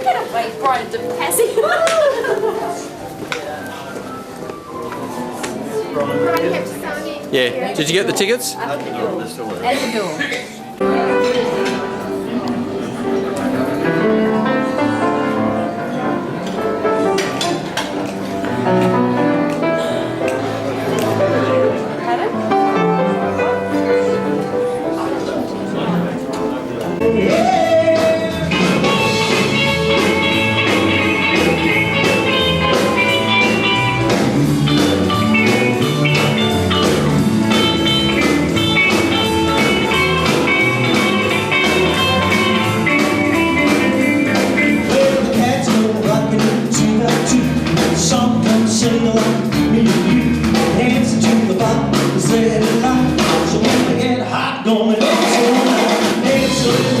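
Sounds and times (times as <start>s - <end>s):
rock and roll music with singing: 27.0s - 57.0s.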